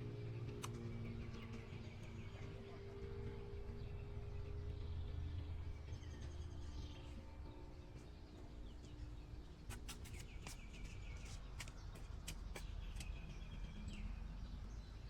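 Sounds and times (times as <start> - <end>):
faint low rumble: 0.0 - 9.6
birds chirping: 0.7 - 15.0.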